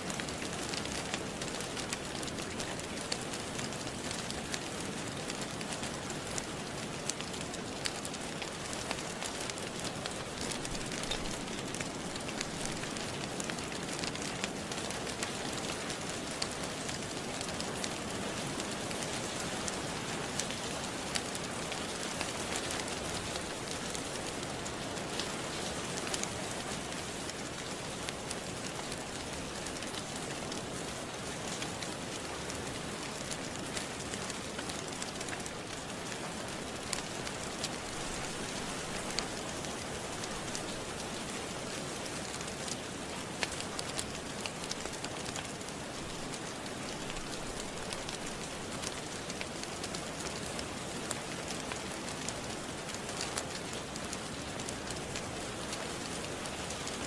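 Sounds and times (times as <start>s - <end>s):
steady rain: 0.0s - 57.0s
wood fire crackling and popping: 0.0s - 57.0s.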